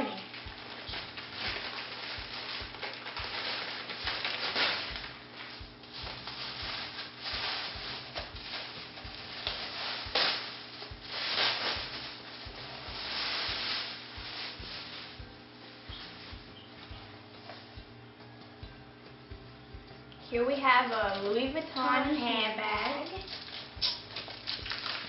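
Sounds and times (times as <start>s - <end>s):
packaging rustling and crinkling: 0.0s - 15.3s, 20.8s - 25.0s
sharp crackle: 0.0s - 15.3s, 22.8s - 25.0s.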